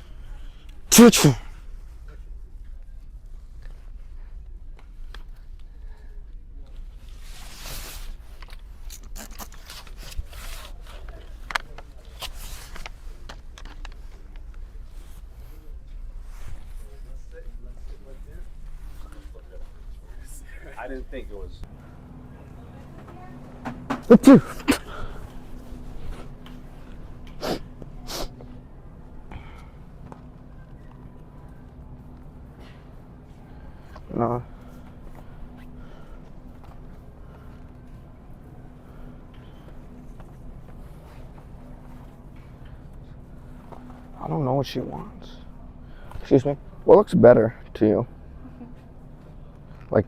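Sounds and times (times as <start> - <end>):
man fake sneezing: 0.9 - 1.5, 24.0 - 25.2.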